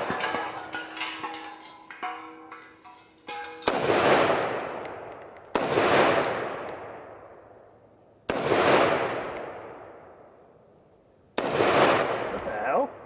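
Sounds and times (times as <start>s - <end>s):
shotgun shots with echo: 3.6s - 7.2s, 8.3s - 9.6s, 11.4s - 12.6s.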